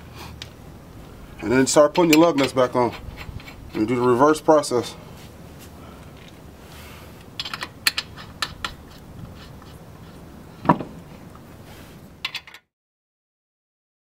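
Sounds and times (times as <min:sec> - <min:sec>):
lug nuts clinking on metal: 0:01.9 - 0:04.0, 0:07.4 - 0:08.8
heavy metal knock: 0:10.6 - 0:11.0.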